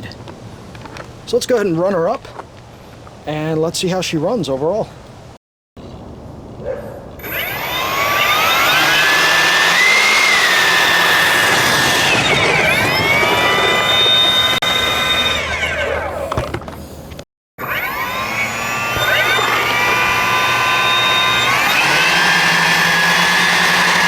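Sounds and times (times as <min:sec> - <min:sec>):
electric ducted fans whining: 0:07.1 - 0:24.0.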